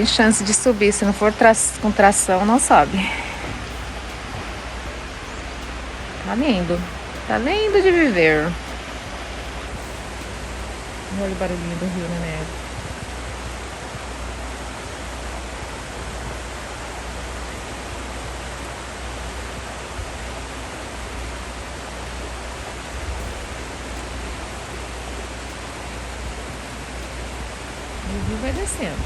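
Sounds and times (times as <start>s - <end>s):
river water rushing: 0.0s - 12.8s.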